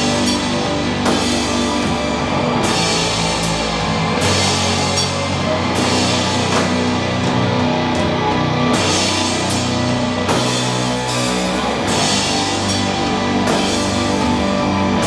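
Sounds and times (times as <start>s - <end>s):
distorted guitars and bass: 0.0s - 15.0s
cymbal crashes: 8.8s - 14.6s.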